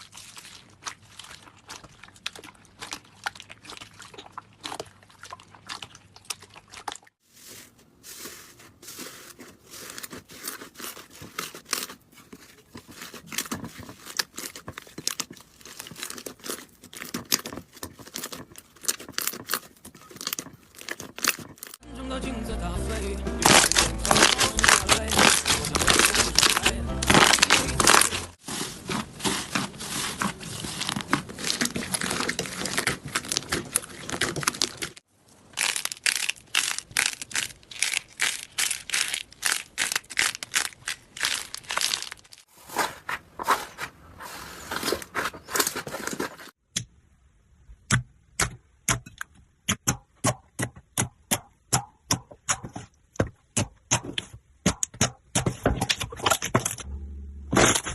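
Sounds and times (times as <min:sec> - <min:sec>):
slime crackling and popping: 0:09.7 - 0:21.8, 0:23.4 - 0:28.2, 0:28.9 - 0:42.5.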